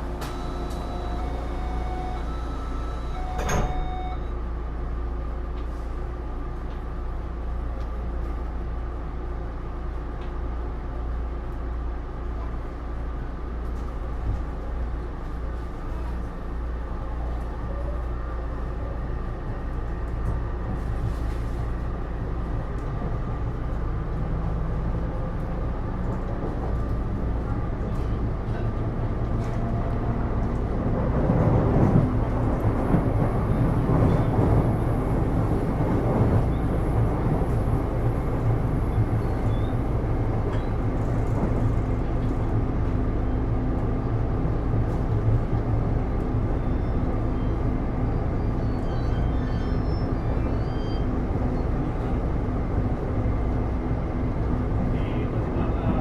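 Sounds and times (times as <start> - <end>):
sliding doors shutting: 0.0 - 4.3
door chime: 2.3 - 4.3.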